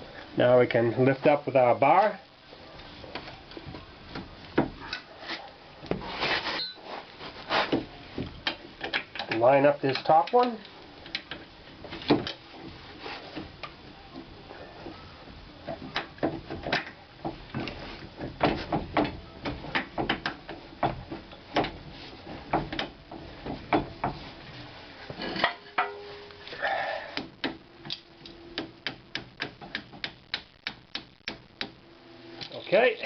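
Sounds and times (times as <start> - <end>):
metal scrape: 4.9 - 7.8, 25.1 - 26.6.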